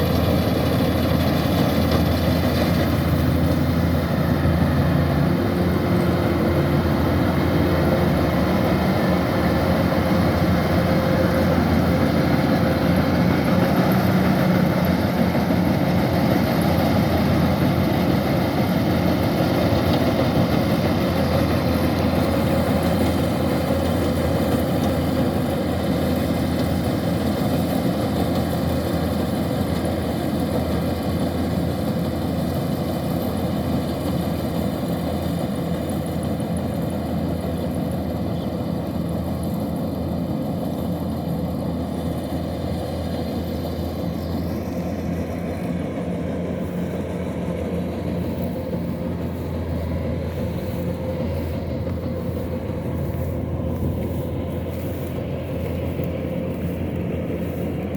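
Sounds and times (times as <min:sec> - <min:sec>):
diesel engine running: 0:00.0 - 0:57.9
machinery whirring: 0:42.7 - 0:57.9.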